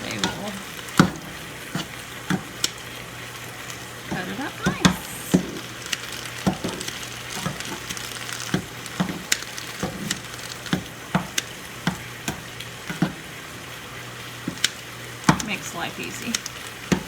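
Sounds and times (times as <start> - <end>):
chopper knocking against pan: 0.0 - 2.8, 4.1 - 13.3, 14.4 - 15.8
vegetables sizzling in a pan: 0.0 - 17.0.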